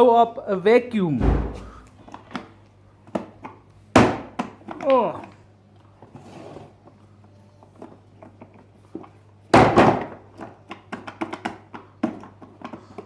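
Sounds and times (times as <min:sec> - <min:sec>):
vacuum cleaner bang: 0:01.2 - 0:01.8, 0:09.5 - 0:10.2.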